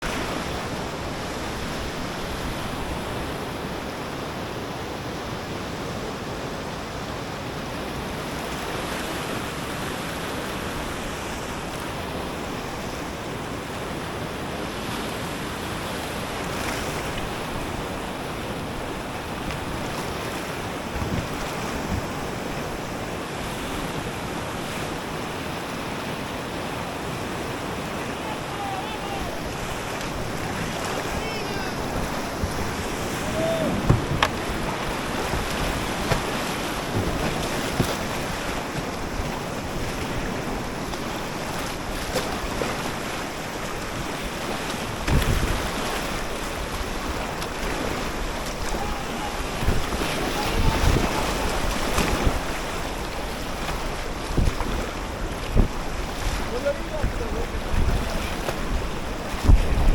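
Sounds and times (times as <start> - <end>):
river water rushing: 0.0 - 59.9
wind buffeting microphone: 17.2 - 22.8, 27.2 - 59.9
short low knocks: 32.0 - 38.1.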